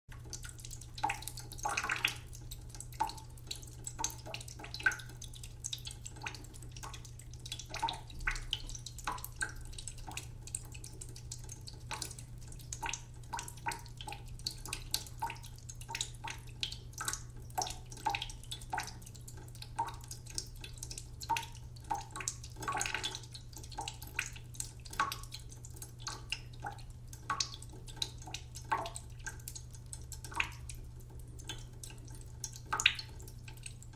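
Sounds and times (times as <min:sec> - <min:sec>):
water dripping from tap: 0:00.1 - 0:33.9.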